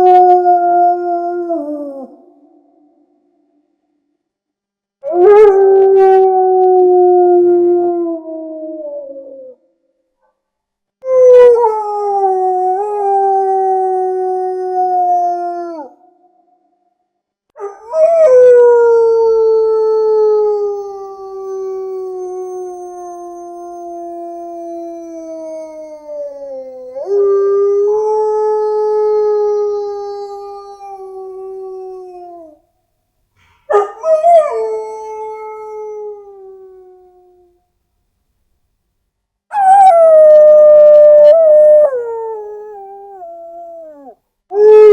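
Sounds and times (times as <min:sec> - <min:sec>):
dog howling: 0:33.7 - 0:37.4, 0:39.5 - 0:44.9.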